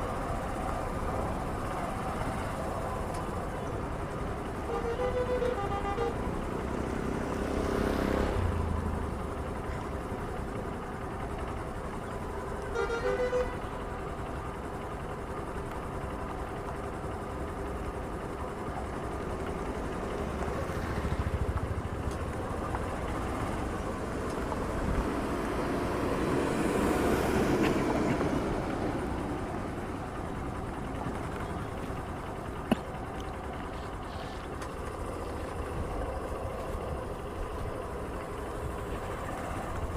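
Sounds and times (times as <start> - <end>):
road traffic passing: 0.0 - 39.9
short horn toots: 4.7 - 6.2.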